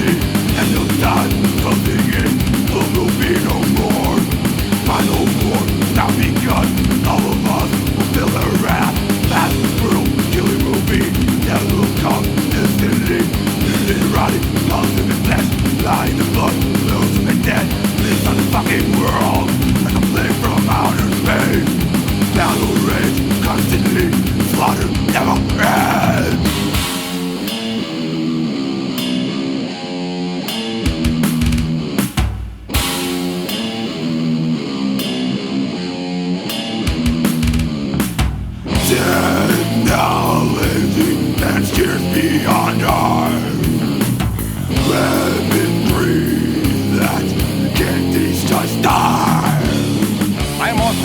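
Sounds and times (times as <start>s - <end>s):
growled vocals: 0.0s - 27.0s, 38.7s - 51.0s
pounding drums: 0.0s - 27.6s, 30.9s - 34.0s, 36.9s - 51.0s
distorted guitars: 0.0s - 51.0s.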